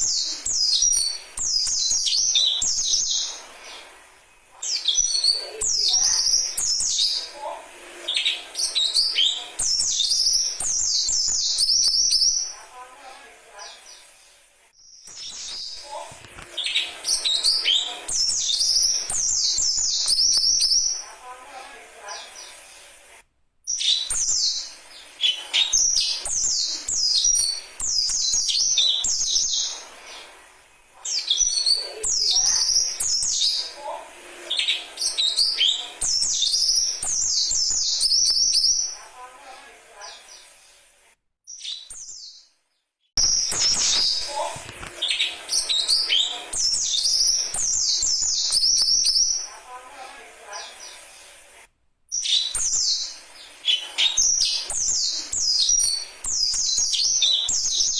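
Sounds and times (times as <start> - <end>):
waterhen chicks chirping: 15.0 - 21.1, 43.2 - 49.5.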